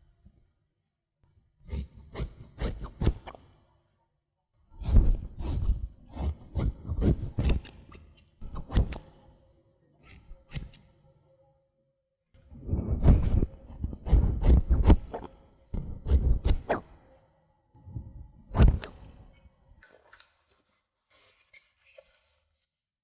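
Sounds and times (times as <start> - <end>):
scissors snipping: 4.8 - 9.1, 10.0 - 10.9, 13.0 - 16.9, 18.5 - 19.2.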